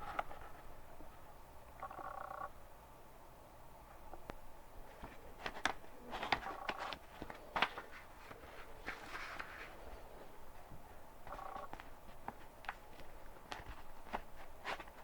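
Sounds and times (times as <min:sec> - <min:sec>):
book pages turning: 0:04.9 - 0:10.3, 0:11.2 - 0:15.0.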